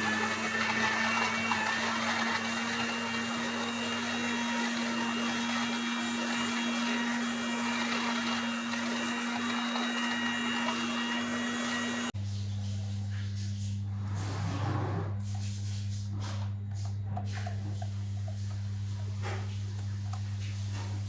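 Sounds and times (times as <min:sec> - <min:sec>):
kitchen appliance motor running: 0:00.0 - 0:12.2.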